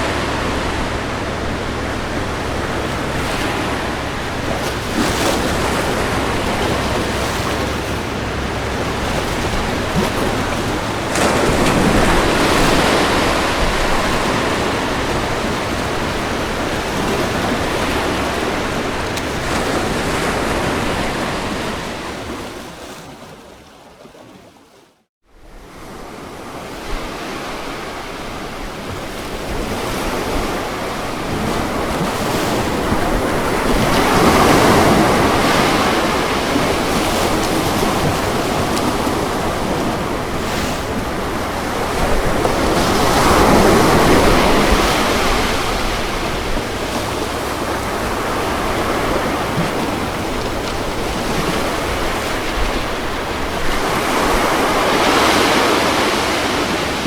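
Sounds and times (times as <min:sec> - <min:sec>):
ocean waves breaking: 0:00.0 - 0:24.8, 0:25.4 - 0:57.0.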